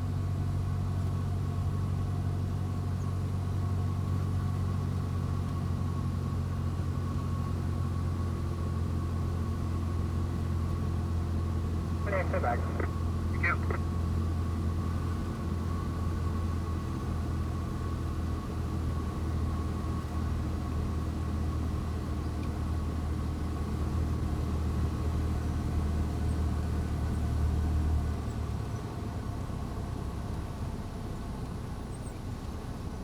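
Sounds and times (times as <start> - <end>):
airliner cabin engine drone: 11.8 - 14.1.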